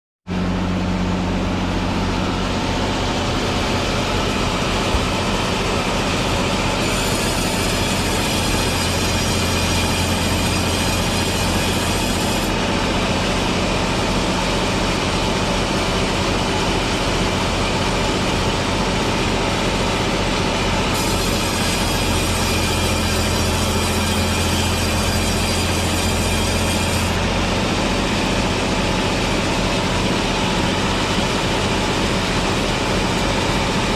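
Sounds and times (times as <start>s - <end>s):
low engine hum: 0.3s - 6.8s
sawing noise: 0.3s - 33.9s.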